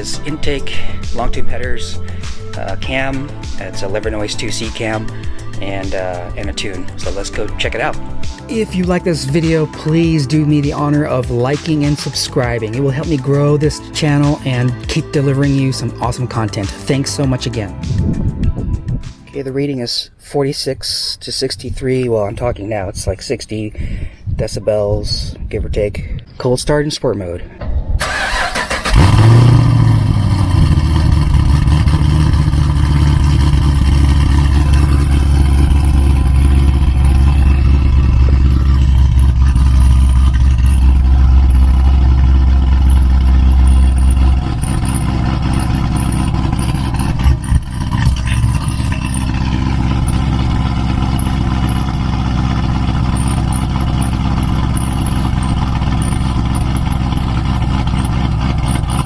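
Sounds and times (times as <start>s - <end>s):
car engine fast idle: 3.3s - 7.4s, 28.0s - 59.0s.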